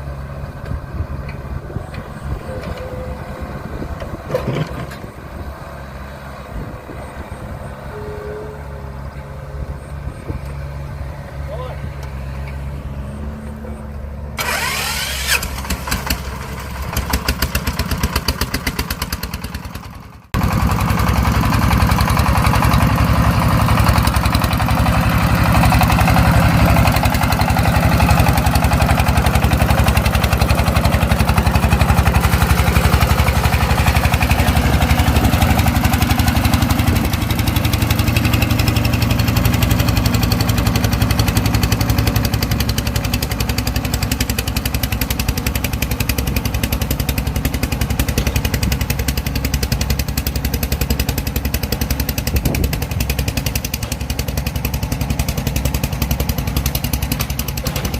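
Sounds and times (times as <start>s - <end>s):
tractor engine chugging: 14.4s - 57.9s.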